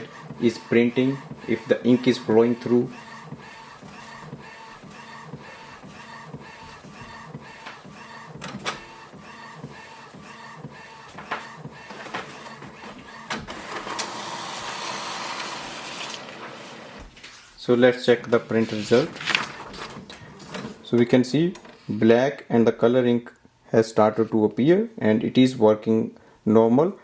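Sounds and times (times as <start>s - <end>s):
inkjet printer ticking: 0.0s - 15.6s
steady mechanical noise: 0.0s - 15.9s.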